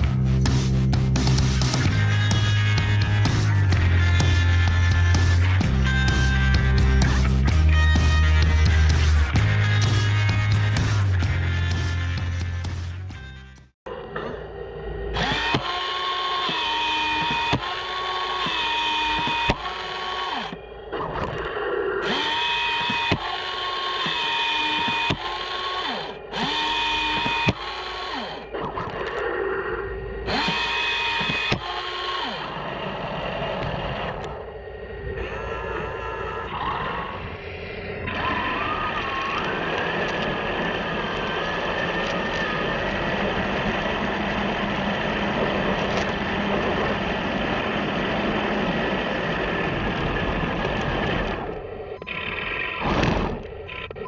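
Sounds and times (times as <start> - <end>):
toy tank electric motors whining: 13.9 - 34.5, 35.1 - 54.0.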